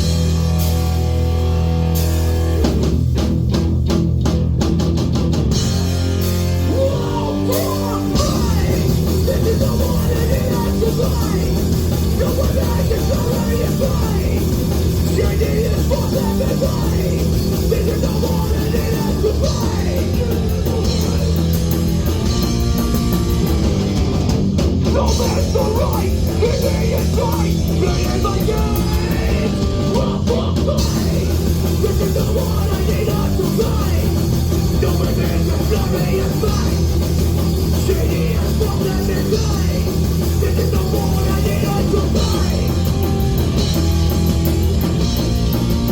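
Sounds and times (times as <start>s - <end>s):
punk band playing live: 0.0s - 45.9s
shouted vocals: 6.7s - 21.4s, 24.9s - 34.1s.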